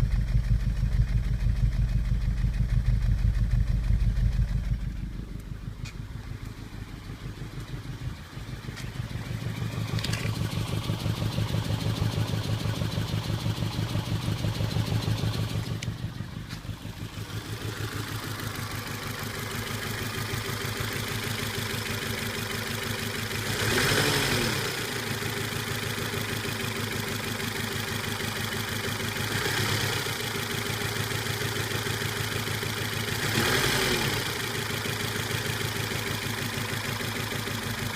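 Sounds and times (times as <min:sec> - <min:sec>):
car engine idling with misfire: 0:00.0 - 0:37.9
engine revving: 0:23.2 - 0:25.7, 0:29.1 - 0:30.4, 0:33.1 - 0:35.4.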